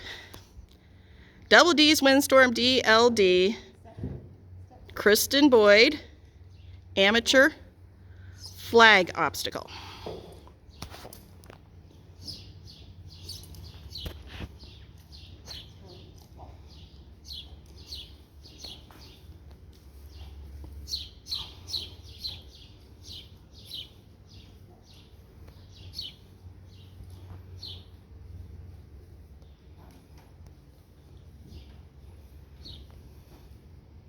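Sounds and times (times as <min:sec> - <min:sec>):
small birds chirping: 0:10.7 - 0:30.1, 0:30.8 - 0:33.5.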